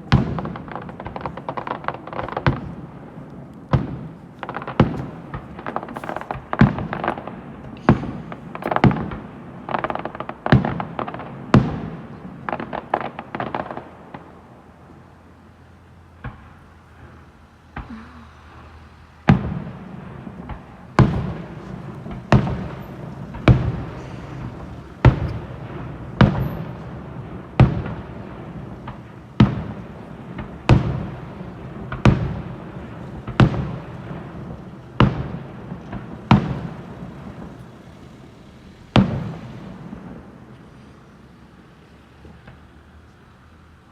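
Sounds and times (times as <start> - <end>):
firework shells bursting: 0.1 - 11.9, 19.3 - 37.9
echoing rumble and crackle: 19.2 - 40.8.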